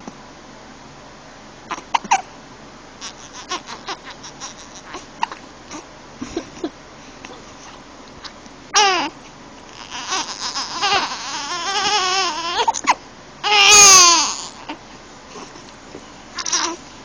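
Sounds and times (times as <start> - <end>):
baby crying and whimpering: 3.0 - 5.9, 8.2 - 14.8, 16.4 - 16.8.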